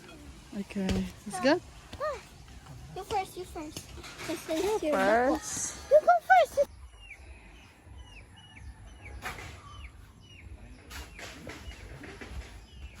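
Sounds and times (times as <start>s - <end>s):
bird chirping: 5.1s - 13.0s.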